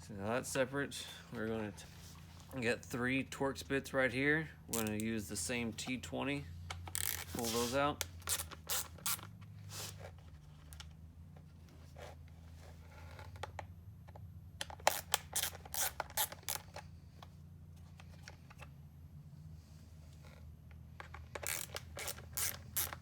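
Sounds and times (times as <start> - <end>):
steady low hum: 0.0 - 23.0
screwdriver clicks and scrapes: 4.7 - 5.1, 6.7 - 9.4, 14.6 - 16.9, 21.0 - 23.0.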